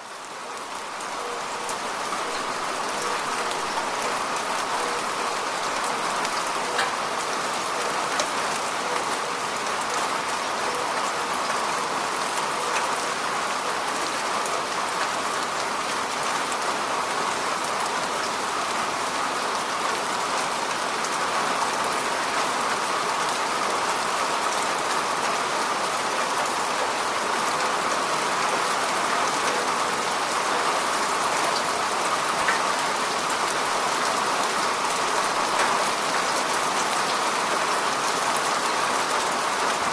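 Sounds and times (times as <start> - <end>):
steady rain patter: 0.0 - 39.9
raindrop ticks: 5.8 - 7.0.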